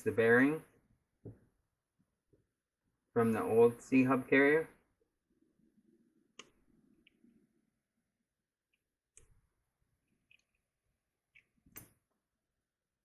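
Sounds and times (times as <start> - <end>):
small parts clicking and knocking: 10.0 - 12.2.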